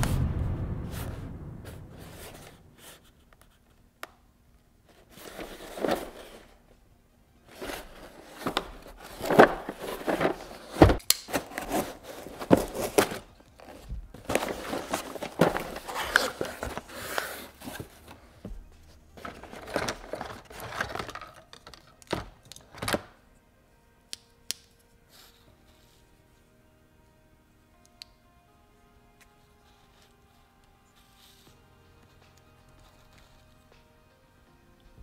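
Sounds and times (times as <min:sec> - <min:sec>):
low sound: 0:00.0 - 0:03.2
plastic packaging rustling and clicking: 0:04.9 - 0:06.7, 0:07.4 - 0:23.2.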